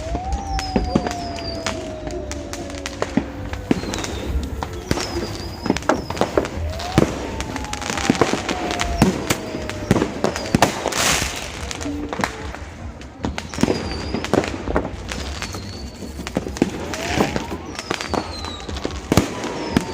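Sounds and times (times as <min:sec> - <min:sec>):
rising and falling tone: 0:00.0 - 0:13.0
fireworks cracking and popping: 0:00.0 - 0:19.9.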